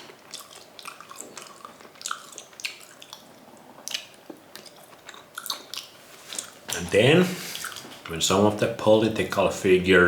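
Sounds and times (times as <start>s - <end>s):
wet chewing and lip-smacking: 0.0s - 6.8s, 7.4s - 8.1s.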